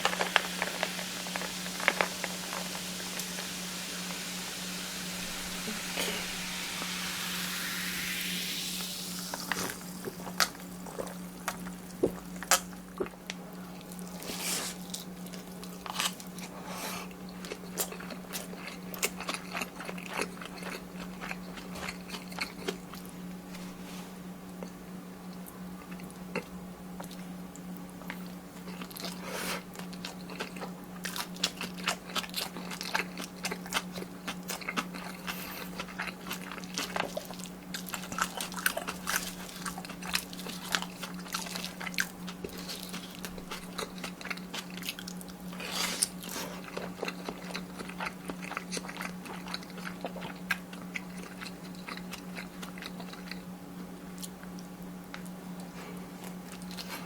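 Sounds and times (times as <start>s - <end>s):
steady low hum: 0.0s - 14.2s
close chewing and crunching: 10.0s - 23.1s, 24.5s - 57.0s.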